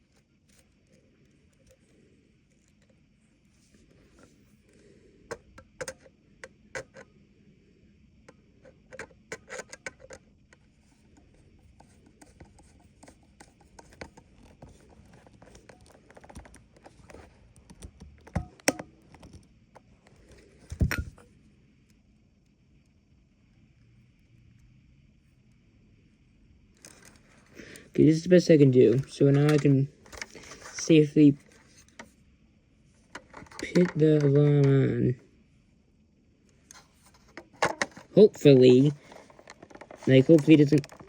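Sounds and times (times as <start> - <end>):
screwdriver clicking and scraping: 6.8 - 7.1, 8.6 - 10.2, 36.7 - 41.0
parts being handled: 11.0 - 21.3, 26.8 - 28.0, 28.7 - 32.1, 33.0 - 35.0, 36.6 - 41.0.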